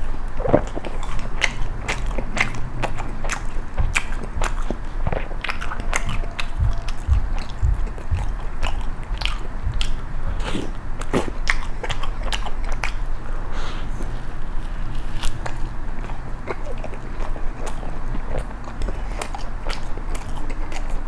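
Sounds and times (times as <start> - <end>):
chewing crisp toast: 0.0 - 21.0
wet mouth sounds: 0.0 - 21.0.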